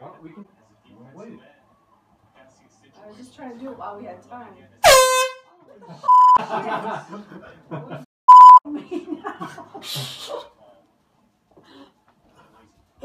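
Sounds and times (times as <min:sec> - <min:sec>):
laughter: 0:05.7 - 0:08.1, 0:08.7 - 0:10.6
censor bleeps: 0:06.1 - 0:06.4, 0:08.3 - 0:08.6.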